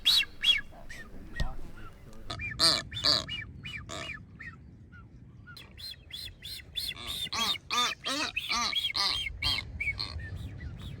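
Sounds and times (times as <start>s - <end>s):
seabird courtship calls: 0.0s - 3.2s.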